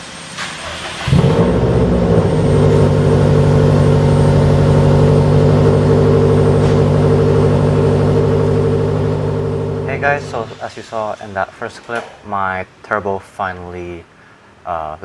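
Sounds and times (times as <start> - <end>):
car engine starting and idling: 0.3 - 10.6.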